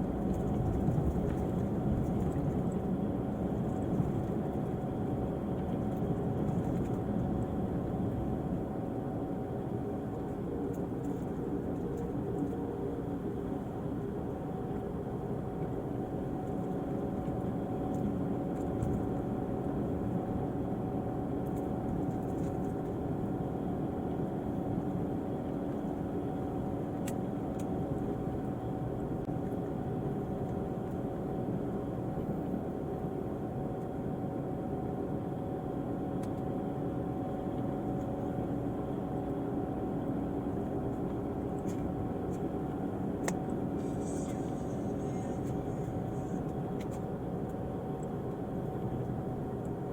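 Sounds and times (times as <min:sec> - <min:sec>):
diesel bus engine humming: 0:35.9 - 0:49.9.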